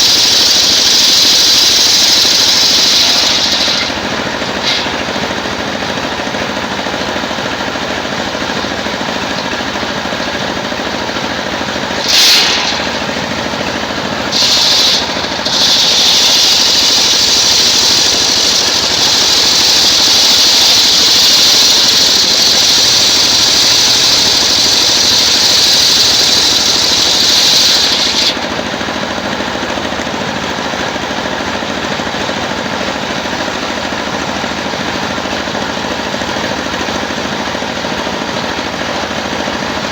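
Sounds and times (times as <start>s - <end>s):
circular saw cutting wood: 0.0s - 28.9s
sawmill engine running: 0.0s - 39.9s.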